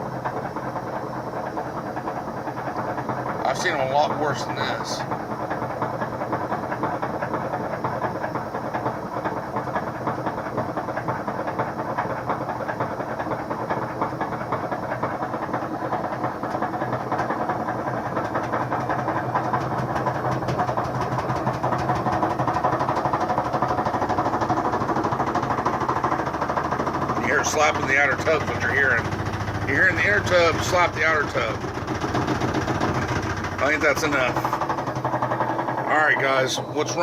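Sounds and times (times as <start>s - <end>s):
washing machine spinning: 0.0s - 37.0s
tub knocking rattle: 12.7s - 37.0s.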